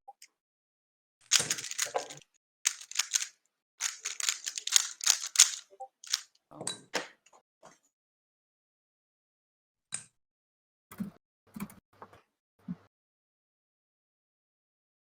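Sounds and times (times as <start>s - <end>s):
puzzle cube plastic clicking: 1.3s - 6.2s.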